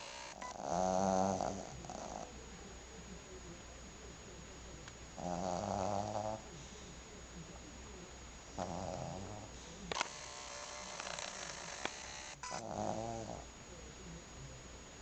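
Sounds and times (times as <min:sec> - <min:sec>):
dog snoring: 0:00.3 - 0:02.3, 0:05.2 - 0:06.5, 0:08.6 - 0:09.6, 0:12.5 - 0:13.5.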